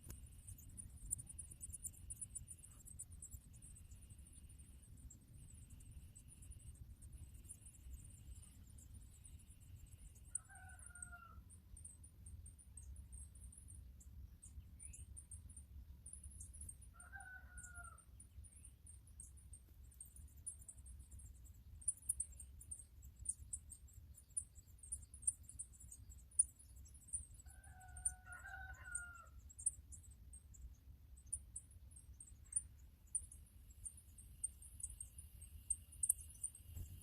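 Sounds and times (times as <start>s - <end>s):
rapid high-pitched chirping: 0.0s - 37.0s
rooster crowing: 10.3s - 11.4s, 16.9s - 18.0s, 27.4s - 29.4s.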